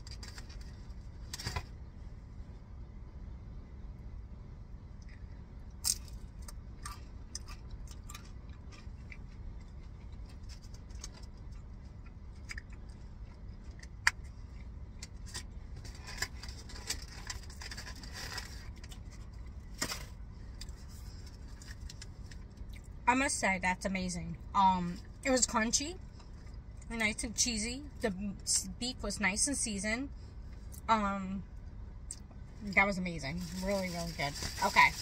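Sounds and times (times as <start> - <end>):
crunchy tacos being chewed: 0.0 - 1.8, 5.0 - 23.0.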